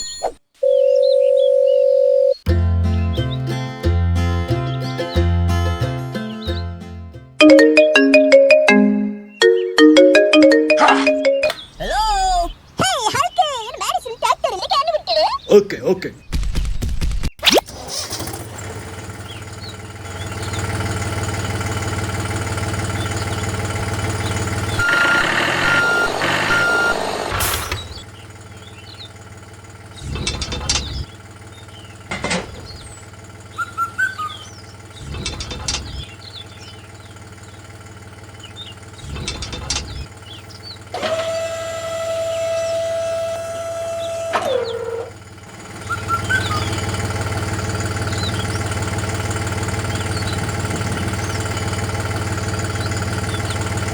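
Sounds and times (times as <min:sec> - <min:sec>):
held tone dropping in pitch: 0:07.4 - 0:11.6
small motor humming: 0:18.1 - 0:28.0, 0:38.3 - 0:53.9
short beeps: 0:24.8 - 0:27.1.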